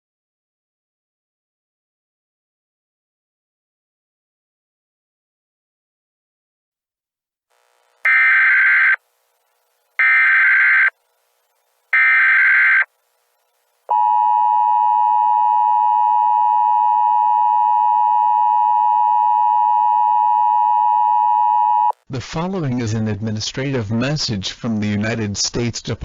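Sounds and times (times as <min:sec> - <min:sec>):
screeching digital data bursts: 0:08.1 - 0:09.0, 0:10.0 - 0:11.0, 0:11.9 - 0:12.9
two-tone attention signal: 0:08.1 - 0:09.0, 0:10.0 - 0:10.9, 0:12.0 - 0:12.9.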